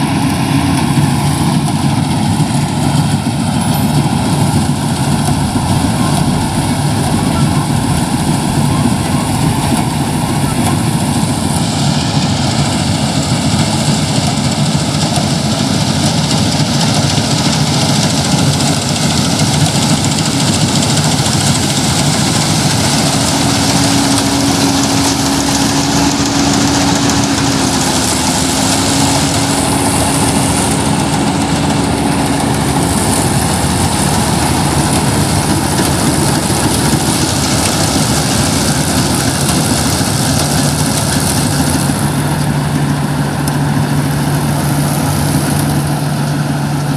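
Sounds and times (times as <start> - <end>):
farm machine engine running: 0.0 - 46.9
higher steady tone: 2.9 - 13.6.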